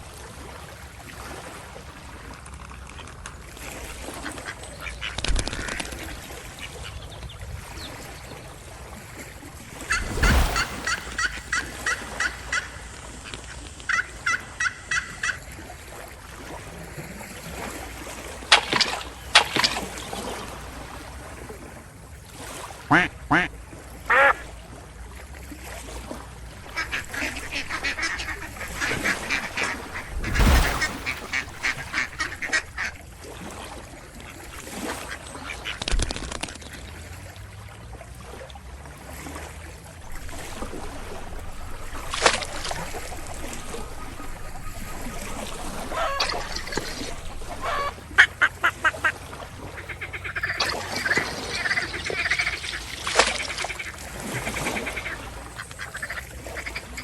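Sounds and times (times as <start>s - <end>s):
ducks quacking: 9.7s - 15.6s, 22.9s - 24.5s, 26.6s - 33.0s, 40.1s - 57.0s.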